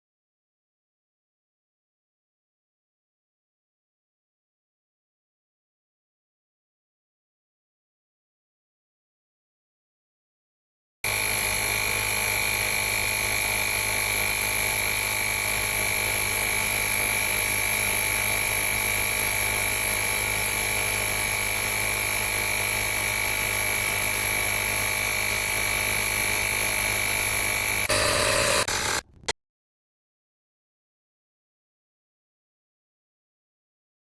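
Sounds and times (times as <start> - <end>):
tire inflator compressor whining: 11.1 - 29.3.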